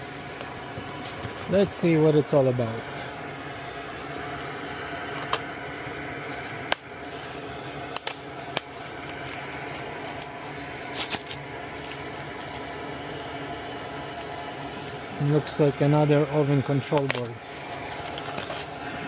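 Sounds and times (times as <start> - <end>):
steady background hum: 0.0 - 19.0.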